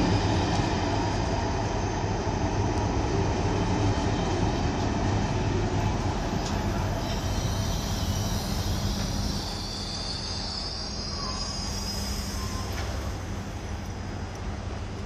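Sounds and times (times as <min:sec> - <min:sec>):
train rolling with low rumble: 0:00.0 - 0:15.0
wheel and brake squeal: 0:06.6 - 0:13.5.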